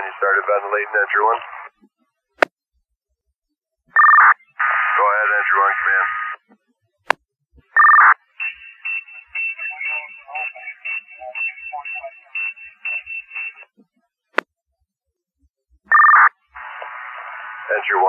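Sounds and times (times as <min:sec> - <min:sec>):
loud electronic radio beep: 0:07.8 - 0:13.6
steady high radio tone: 0:08.4 - 0:13.6
choppy radio voice fragments: 0:17.7 - 0:18.0.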